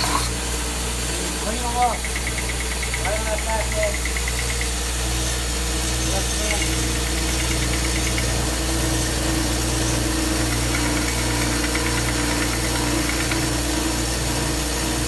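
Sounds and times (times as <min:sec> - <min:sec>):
power sander running: 0:00.0 - 0:15.0
scratchy wood sanding: 0:06.0 - 0:15.0.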